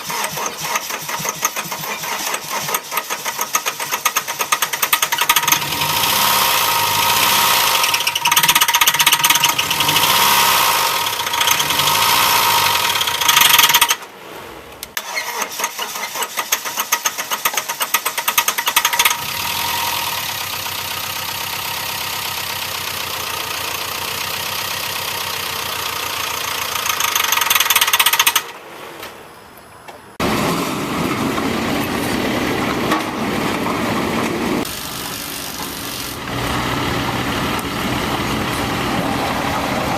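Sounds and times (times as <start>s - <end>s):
engine cranking: 0.0s - 14.0s, 14.9s - 22.9s, 23.7s - 28.6s.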